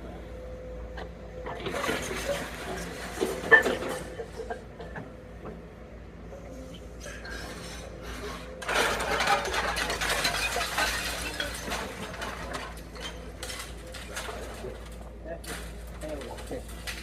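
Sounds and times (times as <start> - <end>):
breaking concrete and falling debris: 1.6 - 4.2, 8.6 - 17.0.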